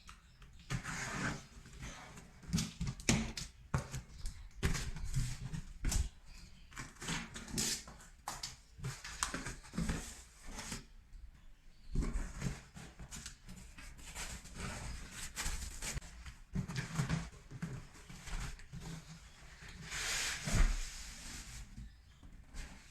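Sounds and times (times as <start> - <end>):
cardboard rustling and scraping: 11.9 - 22.9.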